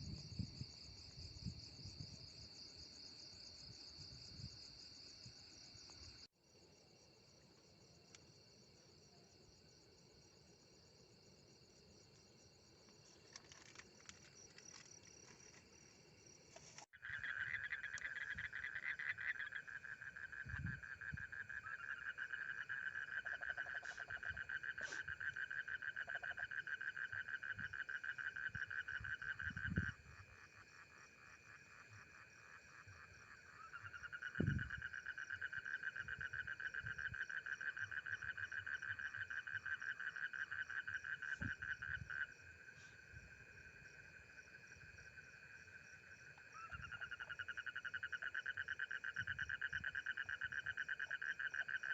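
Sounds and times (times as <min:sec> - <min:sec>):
high insect trill: 0:00.0 - 0:51.9
frogs calling in rattling trill: 0:16.9 - 0:42.5, 0:43.6 - 0:51.9.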